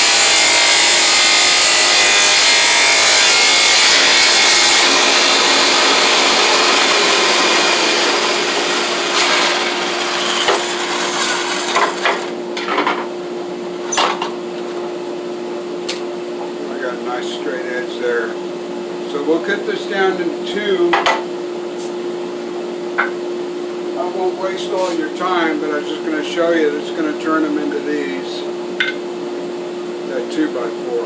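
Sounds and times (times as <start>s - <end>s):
power saw cutting wood: 0.0s - 12.4s
saw motor humming: 0.0s - 12.4s.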